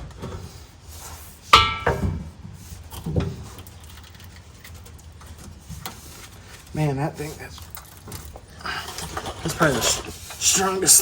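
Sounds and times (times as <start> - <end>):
metal knock: 1.6 - 2.2.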